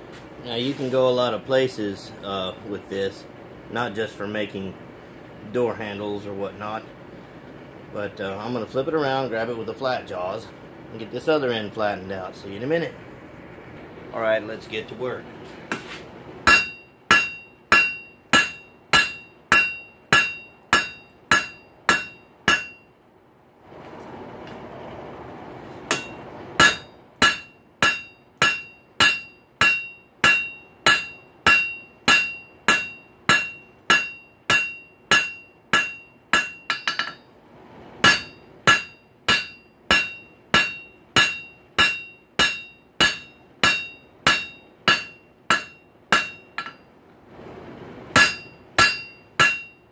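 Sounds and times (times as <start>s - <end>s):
hammer striking metal on anvil: 15.7s - 22.9s, 25.9s - 37.3s, 38.0s - 46.9s, 48.1s - 49.9s.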